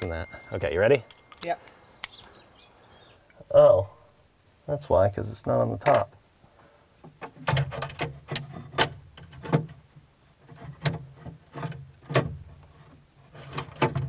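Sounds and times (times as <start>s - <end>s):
sharp clicks and knocks: 7.0s - 14.0s.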